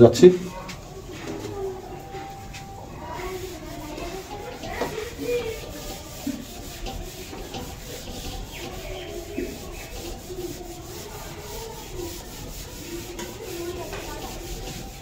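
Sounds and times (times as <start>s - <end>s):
writing on a board: 3.2s - 15.0s.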